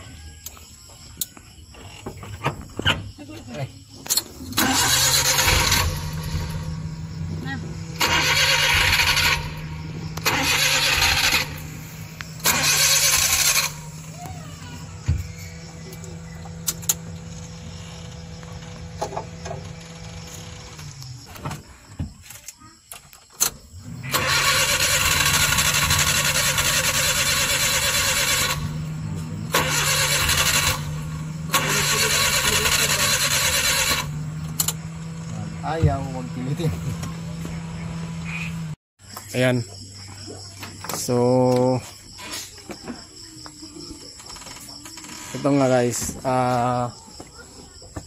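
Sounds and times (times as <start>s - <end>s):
engine cranking on starter: 4.0s - 21.4s, 23.4s - 38.8s, 44.0s - 46.3s.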